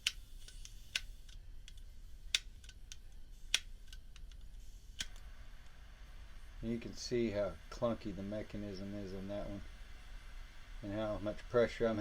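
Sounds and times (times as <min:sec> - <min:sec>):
faint lighter mechanism ticks: 0:00.0 - 0:05.8
lighter striking clicks: 0:00.0 - 0:05.8.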